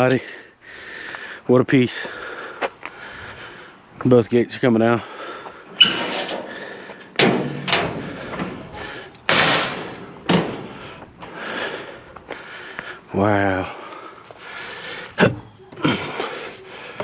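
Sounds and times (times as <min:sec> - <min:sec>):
strained breathing: 0:00.0 - 0:03.9, 0:05.0 - 0:07.2, 0:07.9 - 0:09.3, 0:10.1 - 0:17.0
metal scraping: 0:05.8 - 0:10.9
scrap metal banging: 0:05.8 - 0:11.0.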